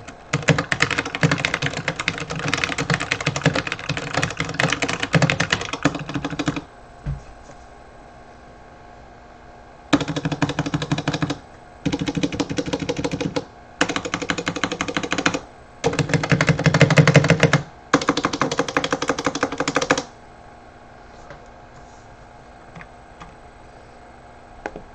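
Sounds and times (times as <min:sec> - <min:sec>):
mechanical keyboard typing: 0:00.0 - 0:06.7, 0:09.9 - 0:20.1.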